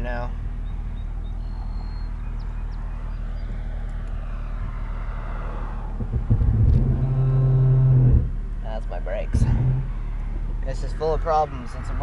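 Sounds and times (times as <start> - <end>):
misfiring car engine: 3.4 - 11.0
loud steady buzz: 5.8 - 10.6.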